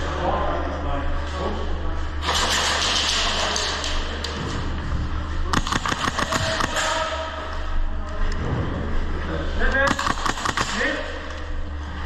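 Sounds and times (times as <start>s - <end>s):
airsoft gun rapid shots: 5.5s - 7.2s, 9.9s - 11.1s.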